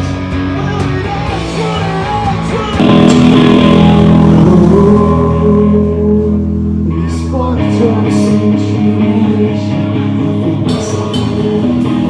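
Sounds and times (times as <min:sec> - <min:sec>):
electric guitar chords: 0:00.0 - 0:12.0
person singing: 0:00.0 - 0:12.0
deep low note: 0:02.8 - 0:08.6.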